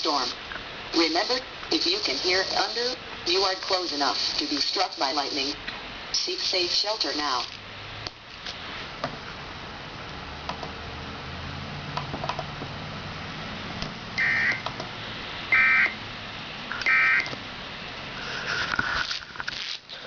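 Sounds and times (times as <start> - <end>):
faint hum: 0.0 - 20.0
data tone bursts: 14.2 - 14.6.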